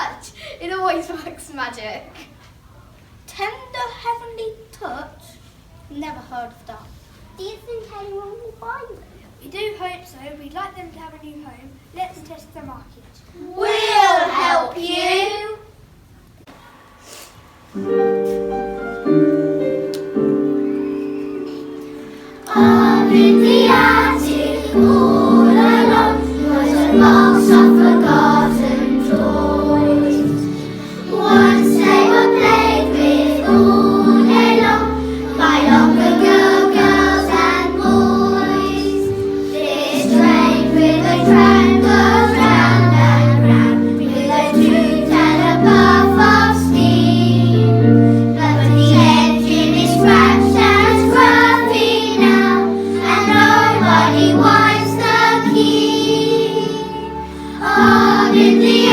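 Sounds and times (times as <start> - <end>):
children singing: 13.6 - 15.2, 20.1 - 58.9
instrumental backing music: 17.8 - 58.9.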